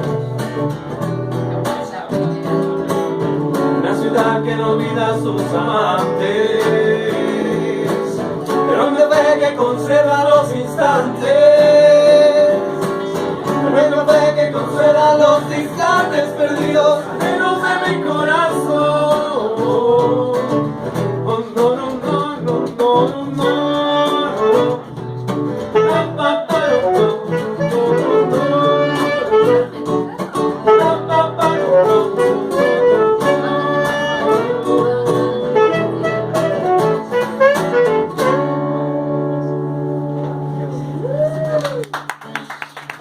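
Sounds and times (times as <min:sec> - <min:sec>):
band playing instrumental: 0:22.5 - 0:40.9.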